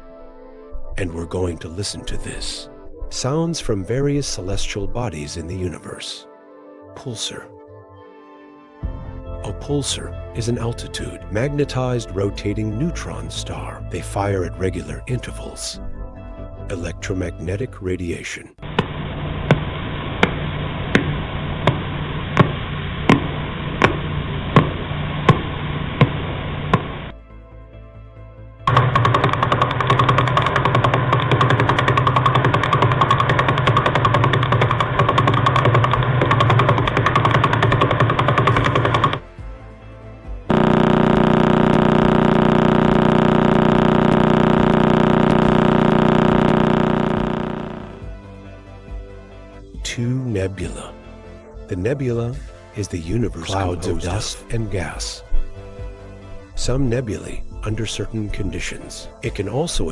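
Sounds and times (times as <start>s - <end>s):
buzzing drone: 18.6s - 27.2s, 28.6s - 48.3s
sharp evenly spaced clicks: 28.7s - 39.3s, 40.5s - 48.0s.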